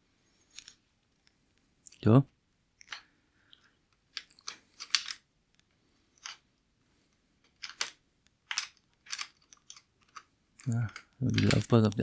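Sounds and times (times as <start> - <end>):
cables scraping plastic housing: 9.1 - 11.9.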